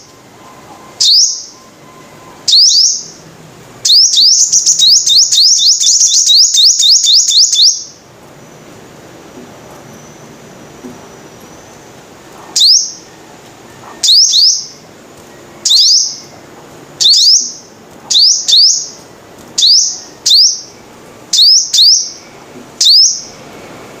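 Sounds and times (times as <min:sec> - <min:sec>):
bird chirping high chips: 0:00.0 - 0:03.2, 0:03.8 - 0:08.0, 0:12.6 - 0:13.1, 0:13.8 - 0:16.4, 0:17.0 - 0:23.4.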